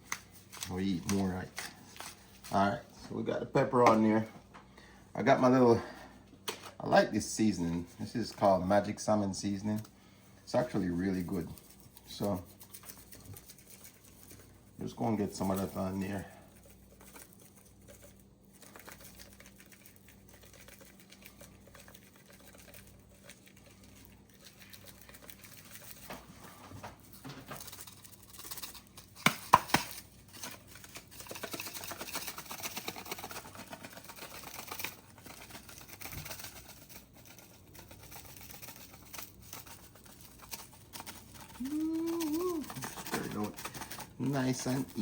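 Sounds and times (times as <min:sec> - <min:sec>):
rustling of handling: 0:00.0 - 0:04.7, 0:05.3 - 0:45.0
spice shaker shaking: 0:10.5 - 0:26.3, 0:27.0 - 0:45.0.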